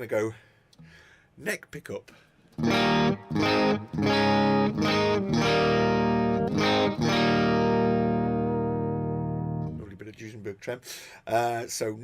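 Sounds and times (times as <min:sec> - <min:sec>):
electric guitar chords ringing: 0:02.6 - 0:09.8.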